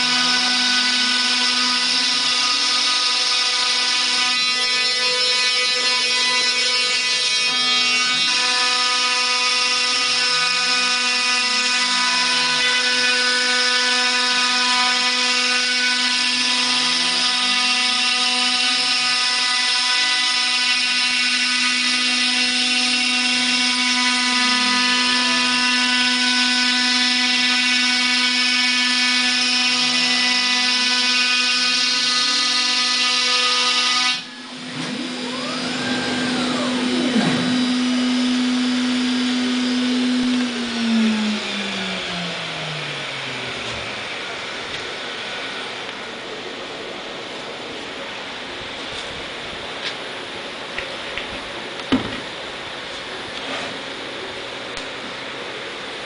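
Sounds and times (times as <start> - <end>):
cnc router spindle whine: 0.0 - 50.8
drive motor tones: 34.3 - 44.8.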